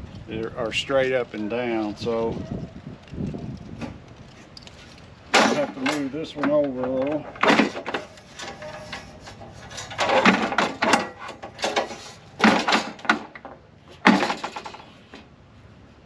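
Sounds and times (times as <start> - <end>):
metal bracket knocking and scraping: 5.3 - 15.2.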